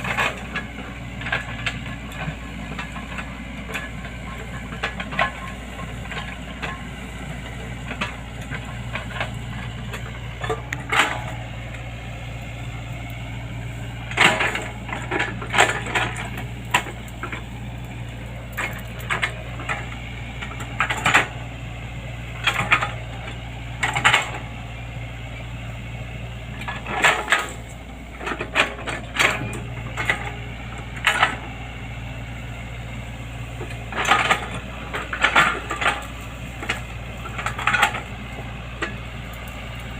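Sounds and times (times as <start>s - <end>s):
excavator engine running: 0.0s - 39.9s.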